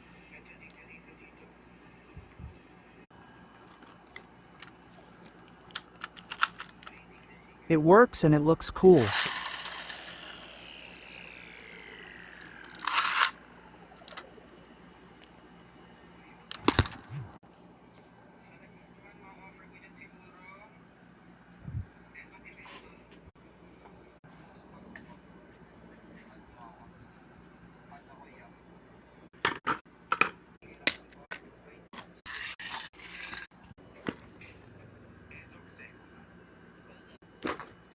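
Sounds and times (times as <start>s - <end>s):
plastic toy parts clicking: 5.3s - 7.0s, 12.4s - 13.4s, 14.0s - 14.2s
loud plastic rattle: 5.4s - 6.9s, 9.0s - 10.3s, 12.4s - 13.4s
spinning top whining: 8.9s - 14.9s.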